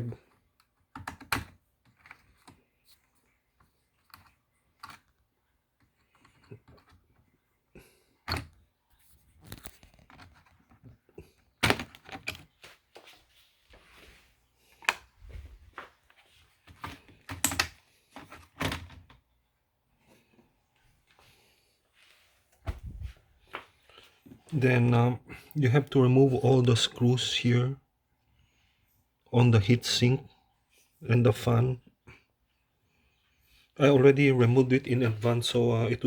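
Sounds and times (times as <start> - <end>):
hands handling laptop parts: 0.1 - 19.4.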